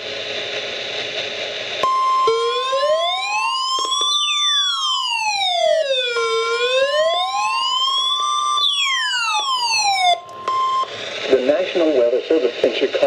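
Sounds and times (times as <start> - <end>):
siren alarm wailing: 1.8 - 11.0.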